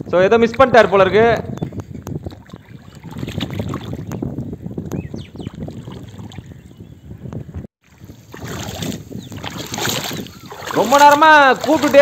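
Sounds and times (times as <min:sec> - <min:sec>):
wind buffeting microphone: 0:00.0 - 0:12.0
splashing water: 0:02.2 - 0:04.1, 0:05.5 - 0:06.5, 0:07.8 - 0:12.0.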